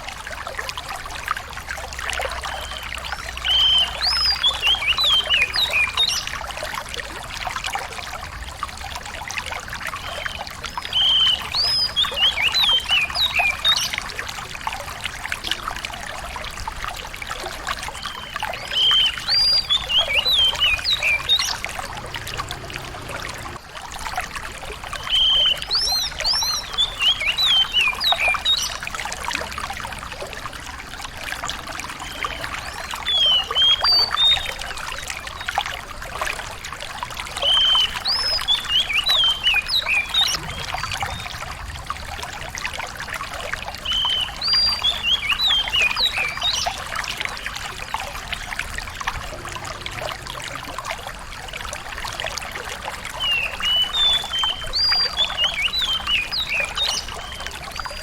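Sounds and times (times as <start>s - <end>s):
running water trickling: 0.0s - 58.0s
songbird whistled song: 2.4s - 6.8s, 9.8s - 14.4s, 17.4s - 23.5s, 24.8s - 29.1s, 31.9s - 35.9s, 37.3s - 41.6s, 43.4s - 50.8s, 53.0s - 58.0s.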